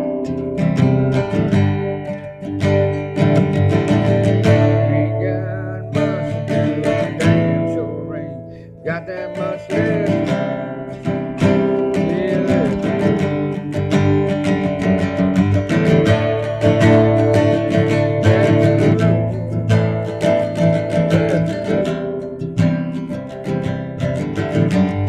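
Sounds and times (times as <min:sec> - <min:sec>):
country-rock music: 0:00.0 - 0:25.0
strummed acoustic guitar: 0:00.0 - 0:25.0.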